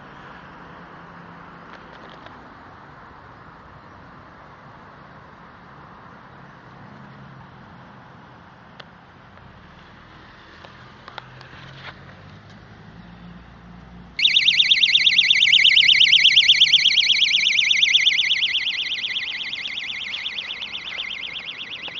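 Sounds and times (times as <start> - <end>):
electronic siren warbling: 14.2 - 21.9.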